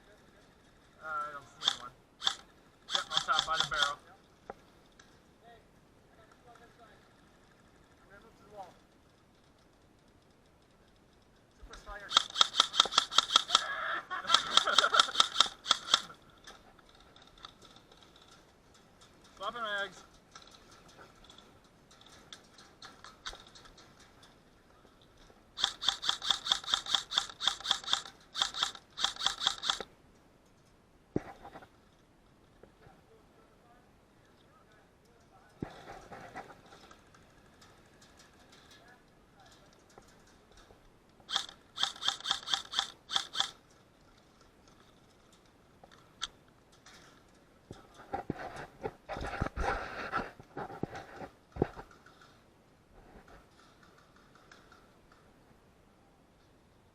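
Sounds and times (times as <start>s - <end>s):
airsoft gun single shots: 1.6s - 4.0s, 12.1s - 16.1s, 25.6s - 29.8s, 41.3s - 43.5s
faint clicks: 1.6s - 5.2s, 8.8s - 30.8s, 36.7s - 48.0s, 53.5s - 55.3s.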